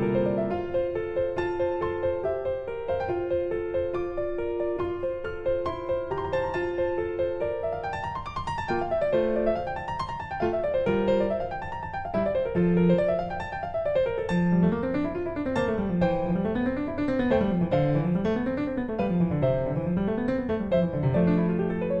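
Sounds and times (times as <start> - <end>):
piano music with arpeggios: 0.0 - 22.0.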